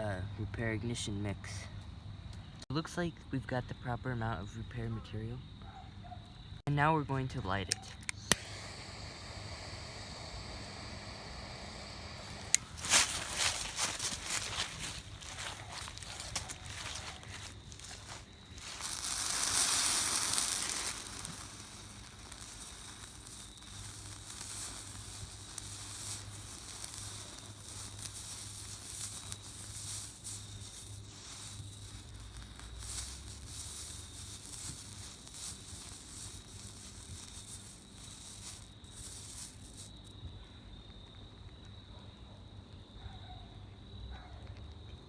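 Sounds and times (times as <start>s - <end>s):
thermite hissing and sizzling: 7.7s - 40.4s.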